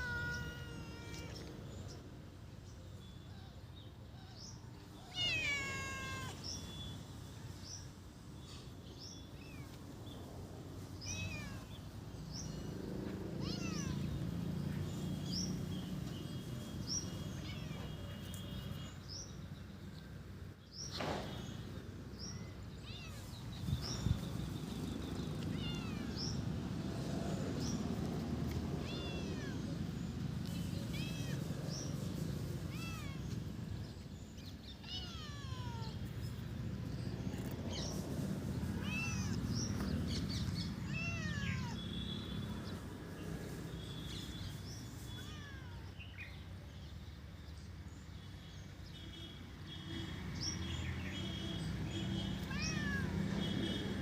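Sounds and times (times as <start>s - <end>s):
cat growling yowl: 0.0s - 1.5s.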